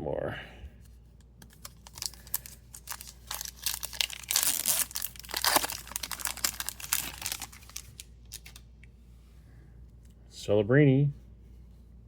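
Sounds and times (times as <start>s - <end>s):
foil wrapper crinkling and tearing: 1.5s - 8.6s.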